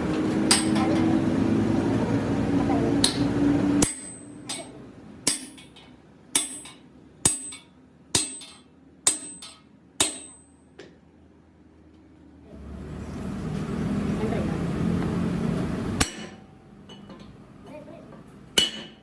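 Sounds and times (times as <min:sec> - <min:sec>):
hammer striking steel: 0:00.4 - 0:01.3, 0:03.0 - 0:10.8, 0:16.0 - 0:17.4, 0:18.6 - 0:19.0.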